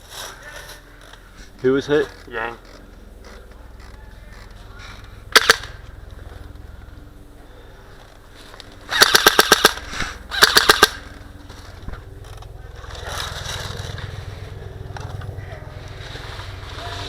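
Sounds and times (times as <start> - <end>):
low steady rumble: 0.0 - 17.0
airsoft rifle full-auto bursts: 5.3 - 5.8, 8.9 - 11.0.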